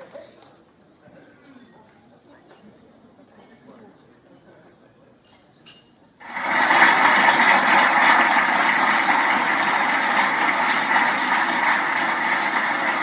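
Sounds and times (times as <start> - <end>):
audience applause: 6.2 - 13.0.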